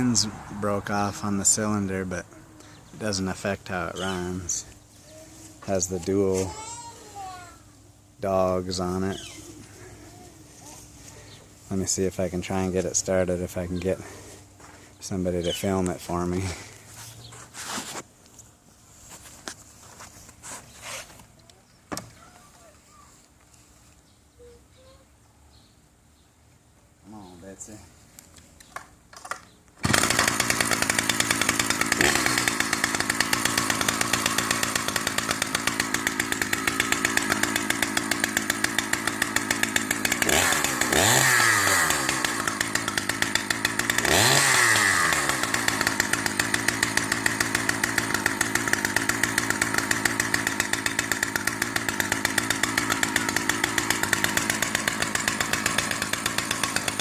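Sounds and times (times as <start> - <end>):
chainsaw engine idling and revving: 0.0 - 4.8, 29.8 - 57.0
chainsaw pull start: 29.2 - 57.0.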